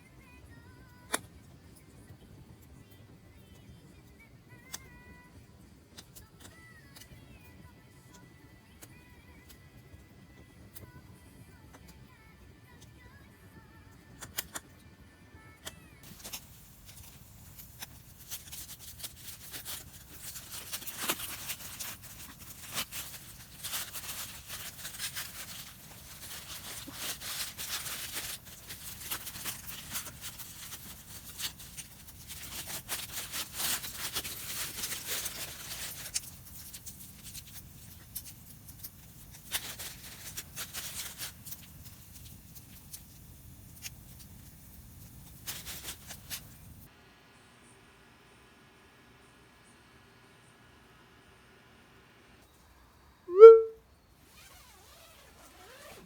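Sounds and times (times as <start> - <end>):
firewood crackling and popping: 16.0 - 46.9.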